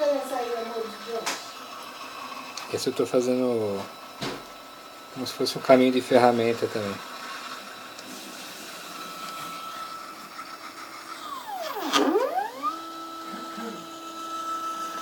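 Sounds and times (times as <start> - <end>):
stepper motors whining: 8.7 - 15.0.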